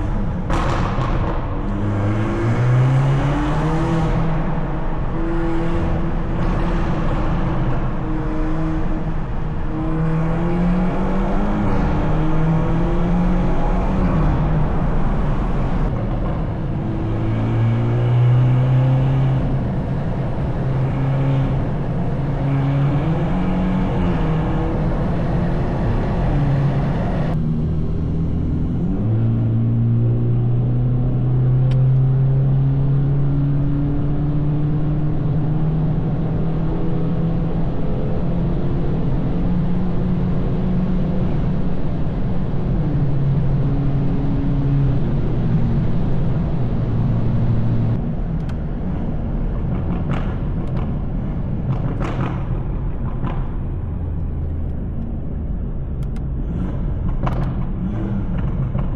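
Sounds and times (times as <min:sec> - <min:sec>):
car engine driving: 0:00.0 - 0:58.9.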